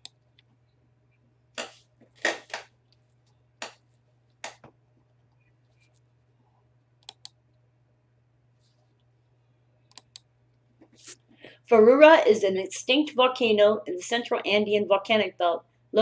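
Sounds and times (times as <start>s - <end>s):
faint low hum: 0.0s - 16.0s
keyboard and mouse clicks: 4.4s - 4.8s, 7.0s - 7.4s, 9.9s - 10.3s.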